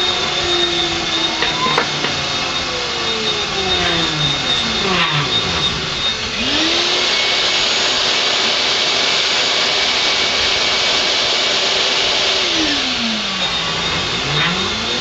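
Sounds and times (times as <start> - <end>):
rising machine tone: 0.0 - 7.3, 12.5 - 15.0
milling machine cutting aluminum: 0.0 - 15.0.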